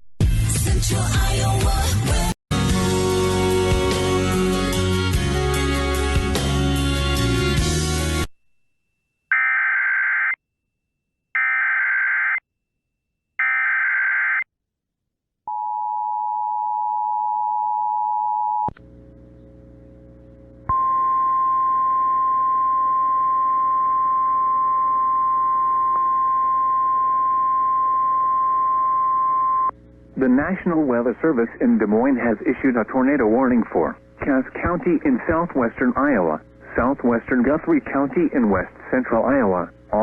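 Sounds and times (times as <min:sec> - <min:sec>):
low hum: 0:18.6 - 0:32.5.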